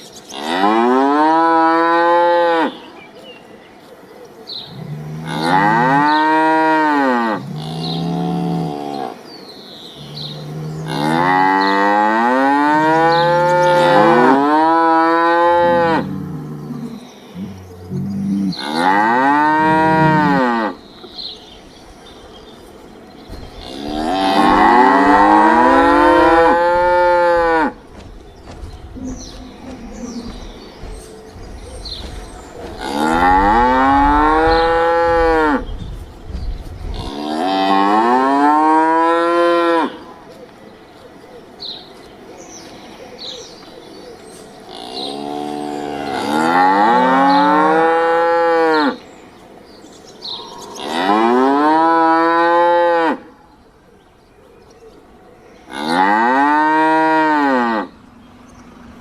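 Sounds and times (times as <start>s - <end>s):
cattle mooing: 4.7s - 9.2s, 10.0s - 20.8s, 23.5s - 27.9s, 29.0s - 35.7s, 44.7s - 49.0s.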